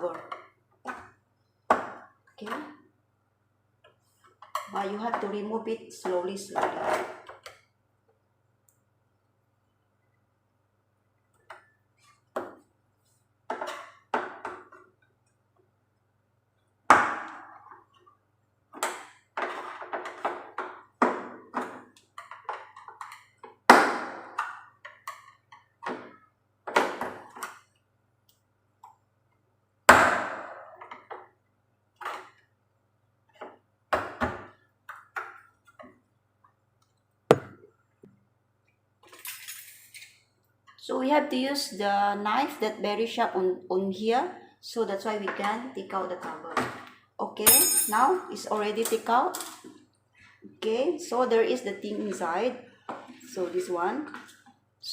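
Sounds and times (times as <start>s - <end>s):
hard knocks: 37.3s - 37.6s.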